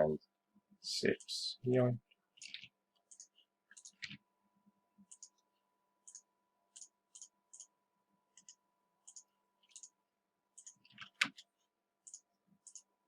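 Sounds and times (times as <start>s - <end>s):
faint steady hum: 0.0s - 13.0s
computer mouse clicking: 2.4s - 4.2s, 5.0s - 5.4s, 6.0s - 7.7s, 8.4s - 10.0s, 10.6s - 12.9s.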